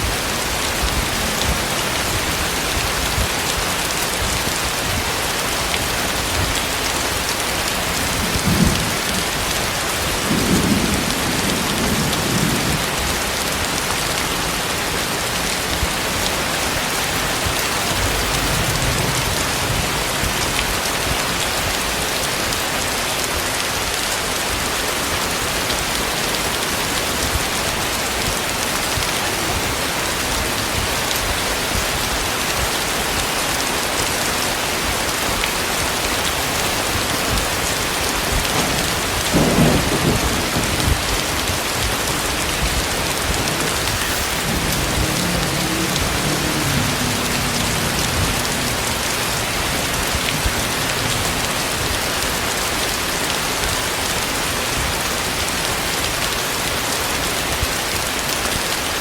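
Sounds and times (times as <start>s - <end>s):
thunder rumbles: 0.0s - 23.6s, 34.8s - 53.6s
heavy rain hiss: 0.0s - 59.0s.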